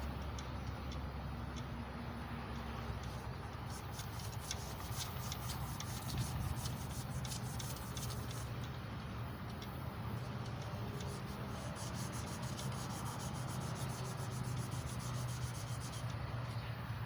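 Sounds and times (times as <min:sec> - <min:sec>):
emery cloth rasping on steel: 0:10.9 - 0:16.1.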